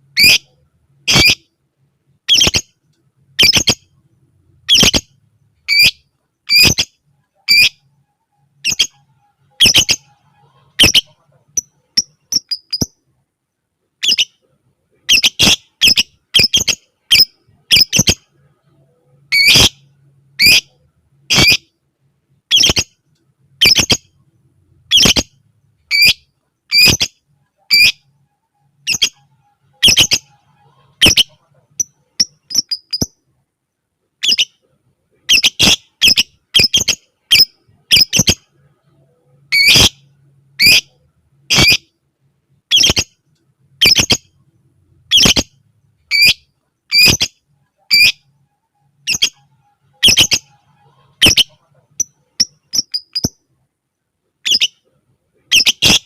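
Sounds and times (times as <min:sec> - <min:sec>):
lovebird shrill calls: 0:00.2 - 0:00.5, 0:01.1 - 0:01.4, 0:02.3 - 0:02.7, 0:03.4 - 0:03.8, 0:04.7 - 0:05.1, 0:05.7 - 0:06.9, 0:07.5 - 0:07.8, 0:08.6 - 0:09.0, 0:09.6 - 0:10.1, 0:10.7 - 0:13.0, 0:14.0 - 0:14.4, 0:15.1 - 0:18.2, 0:19.3 - 0:19.8, 0:20.4 - 0:20.7, 0:21.3 - 0:21.7, 0:22.5 - 0:22.9, 0:23.6 - 0:24.0, 0:24.9 - 0:25.3, 0:25.9 - 0:27.1, 0:27.7 - 0:28.0, 0:28.8 - 0:29.2, 0:29.8 - 0:30.4, 0:31.0 - 0:33.2, 0:34.2 - 0:34.6, 0:35.3 - 0:38.4, 0:39.5 - 0:40.0, 0:40.6 - 0:40.9, 0:41.5 - 0:41.8, 0:42.7 - 0:43.1, 0:43.8 - 0:44.2, 0:45.1 - 0:47.3, 0:47.9 - 0:48.3, 0:49.0 - 0:49.4, 0:50.0 - 0:50.6, 0:51.2 - 0:53.4, 0:54.5 - 0:54.8, 0:55.5 - 0:56.0.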